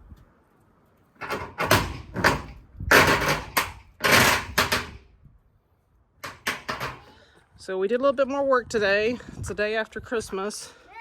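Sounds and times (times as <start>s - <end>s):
shed wall being torn apart: 1.2s - 5.0s
knocks rattles and scraping crashes: 1.2s - 5.1s, 6.2s - 7.1s.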